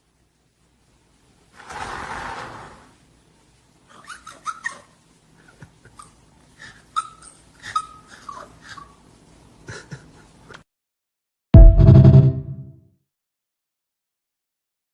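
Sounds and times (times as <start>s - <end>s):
dog whining: 3.9s - 5.0s, 5.9s - 9.0s.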